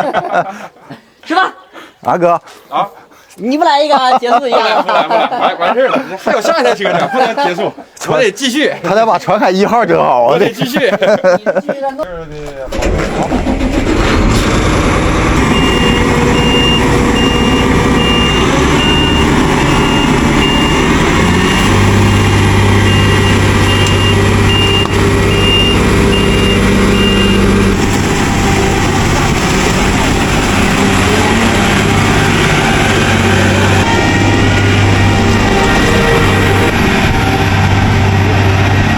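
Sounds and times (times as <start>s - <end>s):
diesel engine running: 12.7s - 38.9s
high warning beeps: 15.5s - 27.5s.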